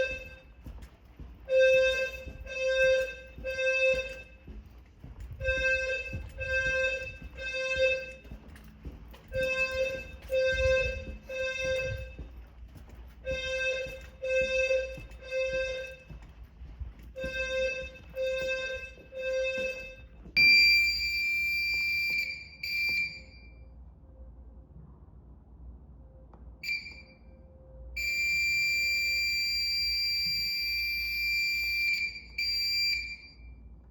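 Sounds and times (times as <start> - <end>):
fire alarm buzzy beeps: 0.0 - 23.8, 26.6 - 33.8
shrill electronic tone: 1.5 - 4.5, 5.4 - 8.4, 9.3 - 12.2, 13.2 - 16.1
short beep: 26.6 - 27.4.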